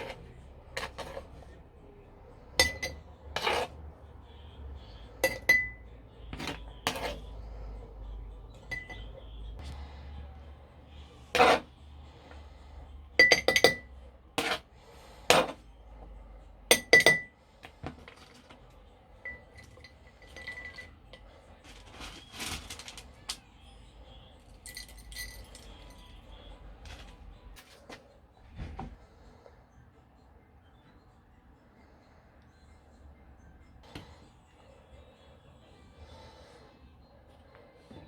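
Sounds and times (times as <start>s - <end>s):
glassware and utensils clinking: 0.0s - 1.6s, 2.6s - 3.8s, 5.2s - 7.3s, 8.5s - 9.4s, 13.2s - 14.6s, 16.7s - 17.4s, 19.2s - 23.4s, 24.5s - 27.2s.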